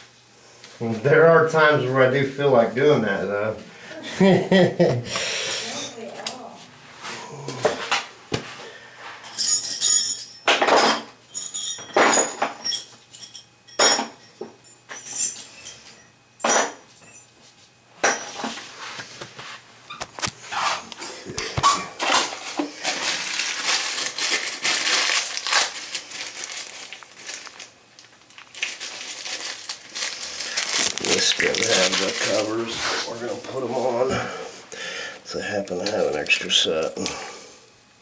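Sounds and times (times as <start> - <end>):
hard parts knocking and clinking: 9.2 - 17.2
rustling and scraping: 17.2 - 27.5, 28.5 - 34.0.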